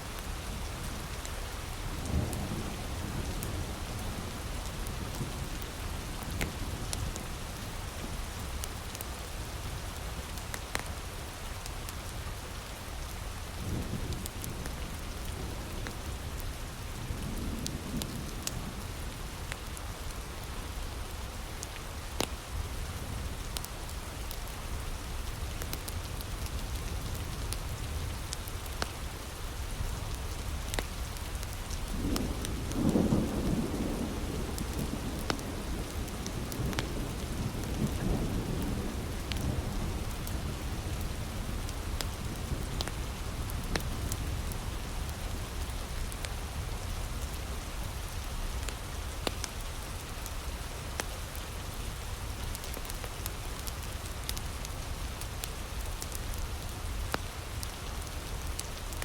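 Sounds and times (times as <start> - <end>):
heavy rain falling: 0.0 - 59.0
wood fire crackling: 30.0 - 33.0, 34.0 - 38.1, 38.9 - 47.0, 52.4 - 59.0.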